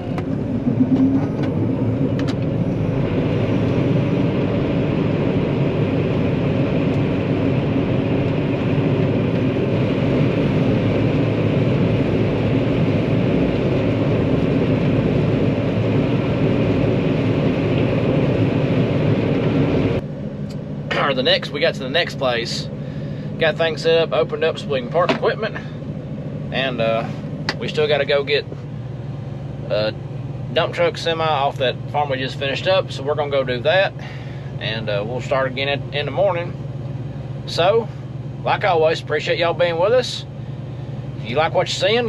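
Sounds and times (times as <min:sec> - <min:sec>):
combine engine drone from cab: 0:00.0 - 0:42.0.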